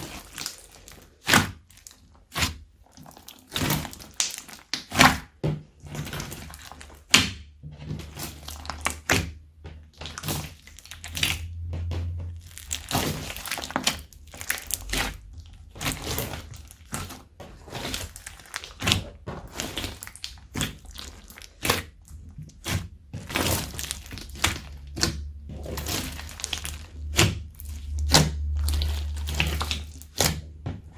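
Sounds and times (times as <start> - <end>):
slime squeezed by hand: 12.4 - 30.4.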